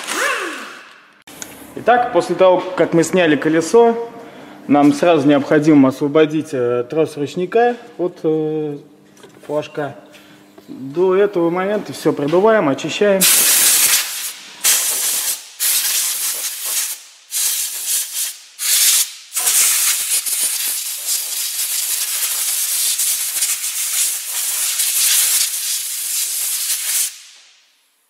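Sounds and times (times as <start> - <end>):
compressed air blasts hissing: 13.2 - 27.4.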